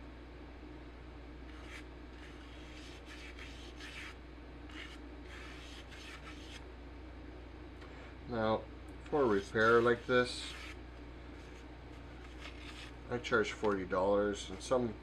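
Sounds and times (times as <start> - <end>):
steady low hum: 0.0 - 15.0
hand rubbing and scraping jacket: 12.2 - 13.0.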